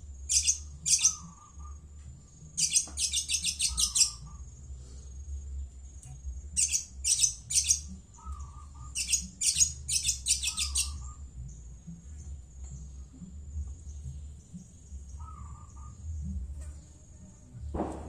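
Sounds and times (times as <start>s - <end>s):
low hum: 3.7s - 18.0s.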